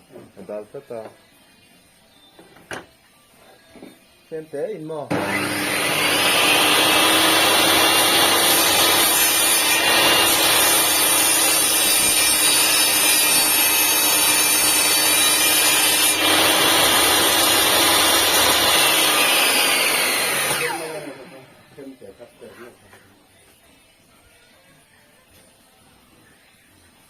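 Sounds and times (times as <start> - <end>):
saw motor winding down: 5.1 - 11.9, 12.6 - 21.6
table saw sawing wood: 5.1 - 21.5.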